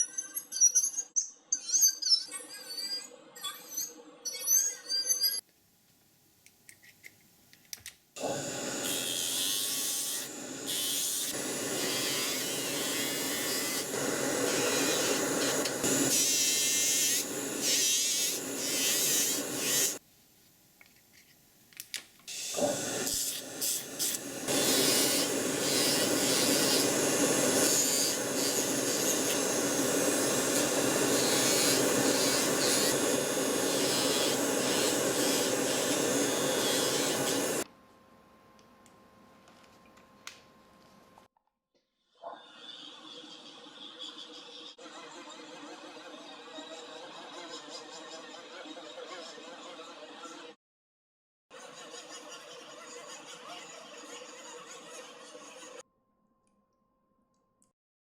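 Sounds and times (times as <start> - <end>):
power tool grinding plastic: 24.1 - 37.6.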